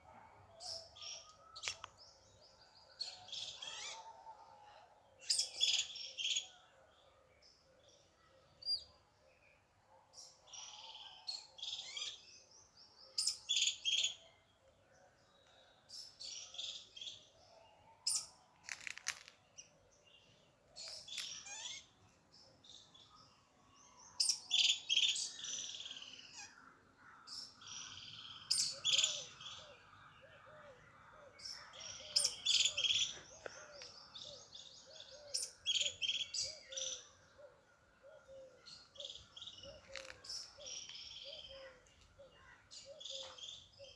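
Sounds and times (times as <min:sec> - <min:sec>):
songbirds chirping and singing: 0:00.0 - 0:43.9.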